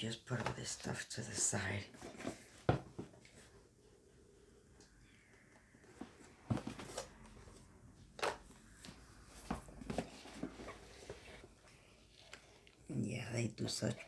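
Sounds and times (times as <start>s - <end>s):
box and packaging handled: 0.2s - 3.7s, 5.8s - 12.9s.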